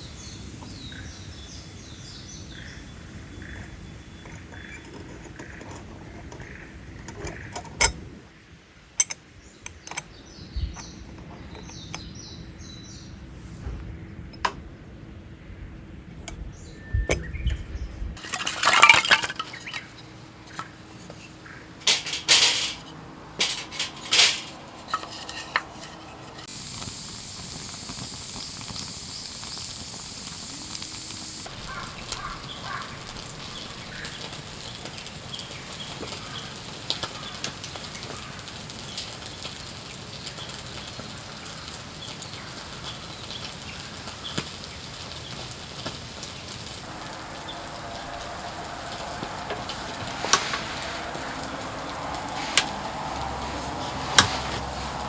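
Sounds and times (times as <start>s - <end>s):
dishes and utensils clinking: 18.2s - 26.5s, 46.9s - 55.0s
quiet hiss with crackling: 18.2s - 55.0s
steady hiss: 18.2s - 55.0s.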